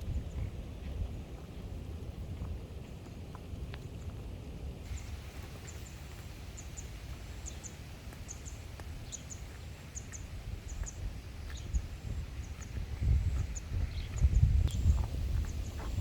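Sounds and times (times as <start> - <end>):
steady low rumble: 0.0 - 16.0
small bird chirping: 4.9 - 16.0.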